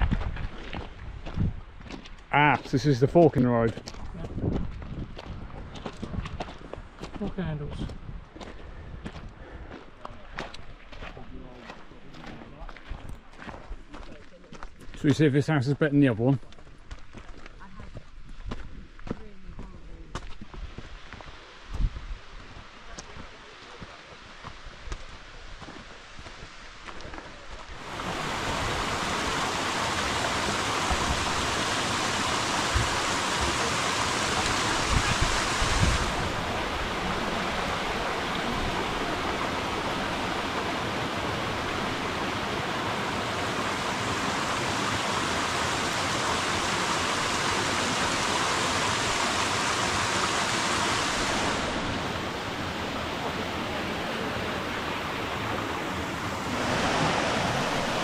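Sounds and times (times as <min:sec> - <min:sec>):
wind buffeting microphone: 0:00.0 - 0:02.0, 0:03.9 - 0:07.0, 0:34.4 - 0:42.2
waterfall roaring: 0:27.8 - 0:58.0.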